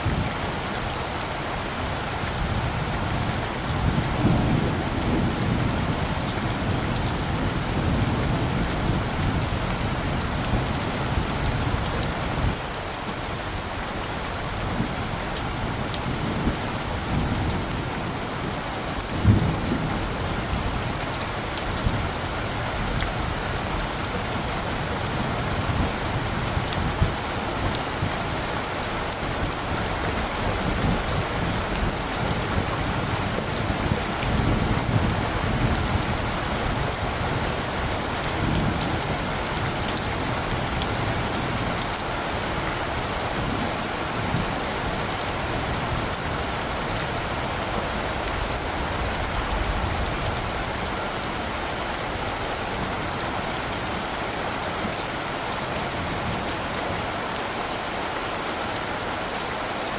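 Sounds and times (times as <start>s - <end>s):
heavy rain: 0.0s - 59.9s
distant thunder rumbles: 1.9s - 12.3s.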